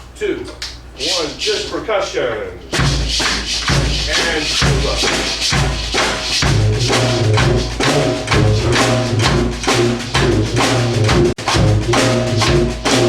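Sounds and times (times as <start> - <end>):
drum beat: 2.7 - 13.0
tuba bass line: 2.7 - 13.0.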